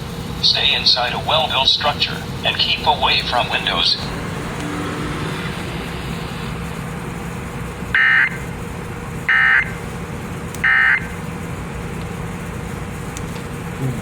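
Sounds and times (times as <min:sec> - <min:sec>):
radio broadcast hiss: 0:00.3 - 0:04.8.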